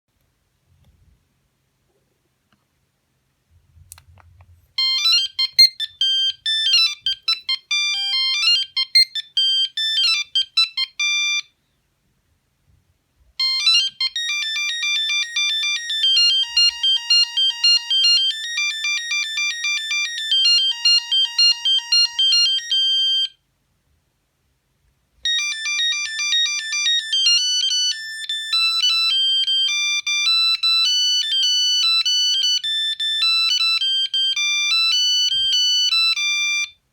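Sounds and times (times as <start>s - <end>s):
phone ringtone beeping melodies: 4.8s - 11.5s, 13.4s - 23.4s, 25.2s - 36.8s.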